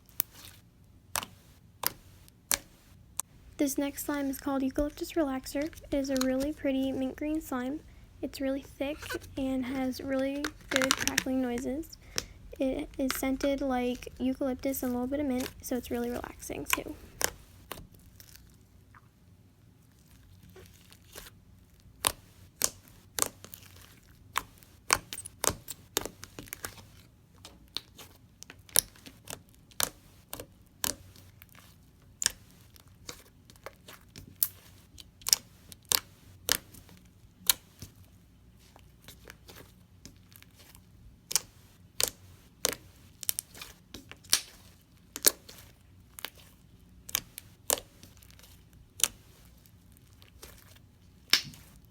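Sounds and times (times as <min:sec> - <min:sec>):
slime crackling pops: 0:44.2 - 0:45.6, 0:51.3 - 0:51.7.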